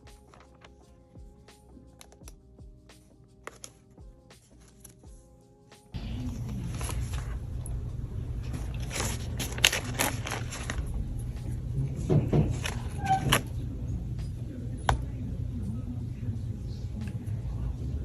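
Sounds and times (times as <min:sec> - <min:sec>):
packaging crackles and scrapes: 0:00.2 - 0:00.8, 0:06.0 - 0:07.7, 0:08.4 - 0:11.3, 0:12.4 - 0:13.6
steady low hum: 0:06.0 - 0:18.0.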